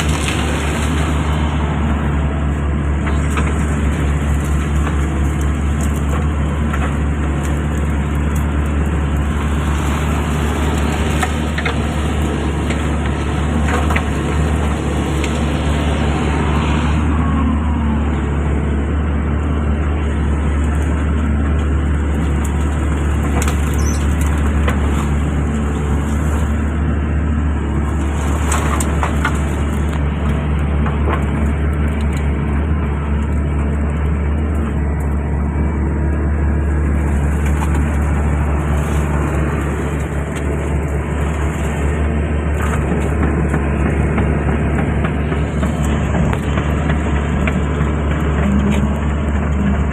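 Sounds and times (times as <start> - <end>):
excavator diesel engine running: 0.0 - 49.9.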